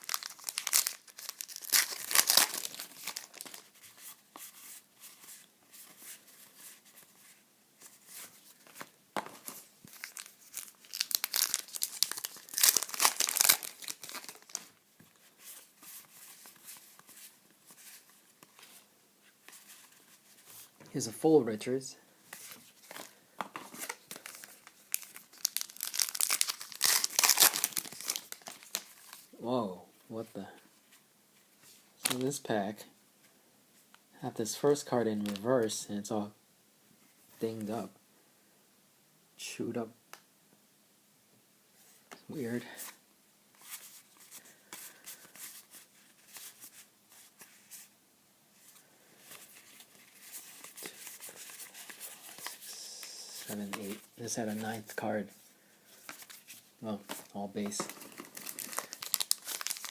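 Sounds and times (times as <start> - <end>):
card pack wrapper tearing and crinkling: 0.0 - 3.7, 8.7 - 14.8, 22.8 - 29.3, 49.3 - 55.2, 56.0 - 59.9.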